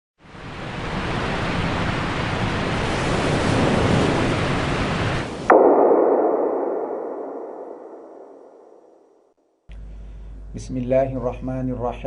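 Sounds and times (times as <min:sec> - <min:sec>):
steady rushing noise: 0:00.3 - 0:09.0.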